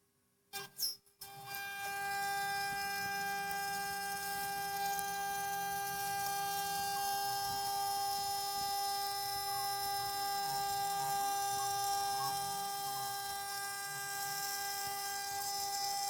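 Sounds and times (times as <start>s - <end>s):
router spindle high-pitched whine: 0.6s - 16.0s.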